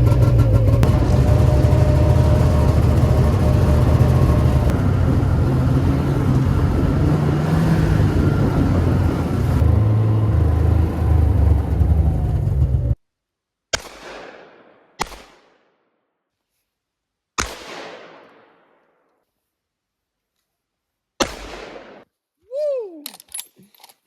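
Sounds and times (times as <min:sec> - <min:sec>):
rising and falling tone: 0:00.5 - 0:13.0
gunshots with echo: 0:13.7 - 0:15.7, 0:17.4 - 0:19.0, 0:21.2 - 0:22.0.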